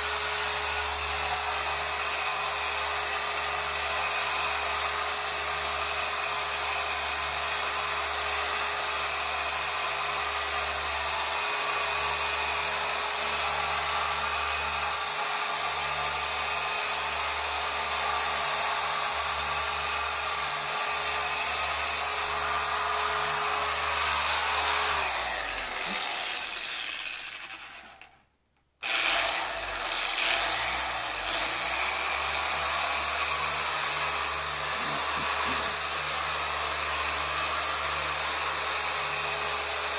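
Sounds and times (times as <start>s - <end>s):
orbital polisher motor whine: 19.0s - 27.8s, 28.8s - 39.9s.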